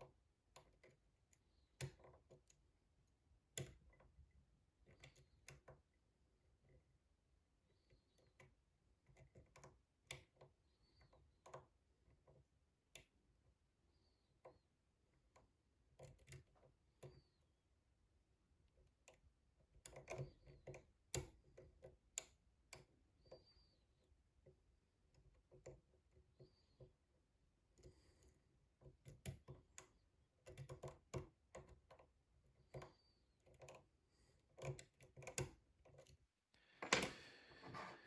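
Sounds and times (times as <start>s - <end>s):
lock pick clicking in a lock: 34.5s - 36.2s
light scrapes: 36.8s - 38.0s.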